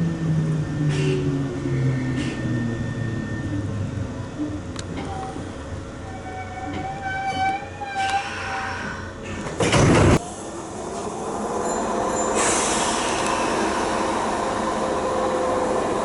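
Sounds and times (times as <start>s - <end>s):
electric train rushing: 7.8s - 16.0s.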